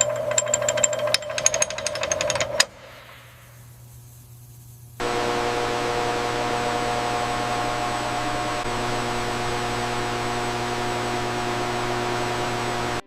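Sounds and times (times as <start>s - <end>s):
low hum: 0.0s - 13.0s
steady tones: 0.0s - 13.0s
steady hiss: 2.6s - 13.0s.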